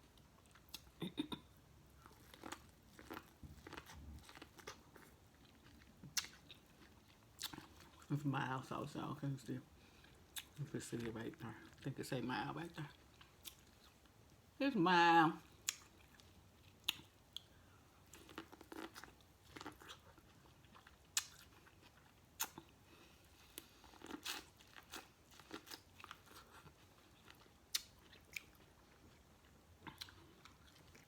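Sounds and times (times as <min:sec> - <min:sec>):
chewing and smacking: 0:02.0 - 0:08.1, 0:12.9 - 0:14.1, 0:15.6 - 0:31.0.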